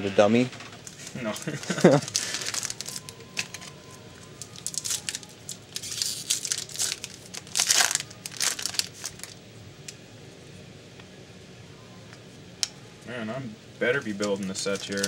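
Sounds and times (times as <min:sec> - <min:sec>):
foil wrapper crinkling and tearing: 0:00.9 - 0:09.4, 0:14.0 - 0:15.0.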